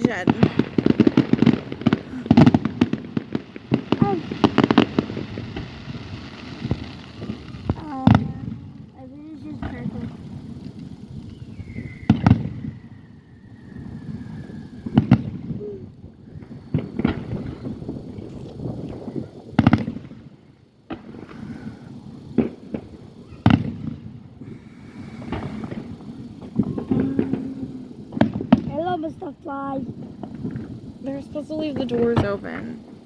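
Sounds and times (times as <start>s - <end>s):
firework booms: 0.0s - 33.0s
fireworks crackling and rumbling: 0.0s - 33.0s.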